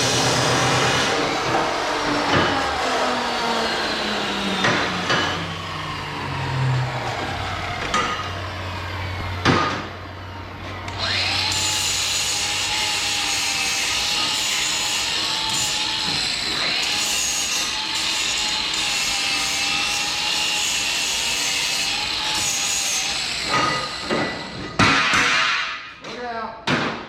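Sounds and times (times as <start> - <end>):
motor steady whine: 0.0 - 13.6
power saw cutting steel: 0.0 - 25.9
sharp metallic knocks: 23.4 - 25.9
loud metal clank: 23.4 - 26.0.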